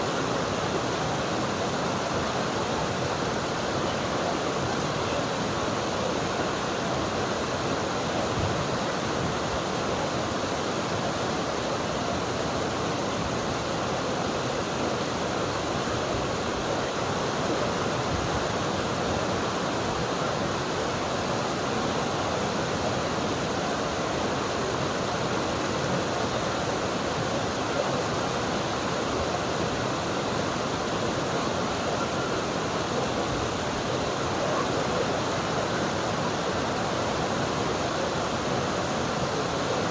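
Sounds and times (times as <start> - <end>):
river water flowing over rocks: 0.0 - 39.9.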